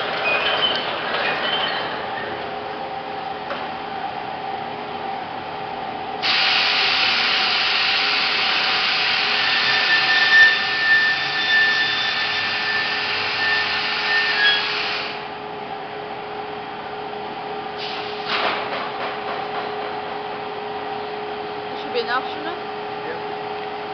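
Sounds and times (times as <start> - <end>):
hiss of rushing air: 6.2 - 9.4.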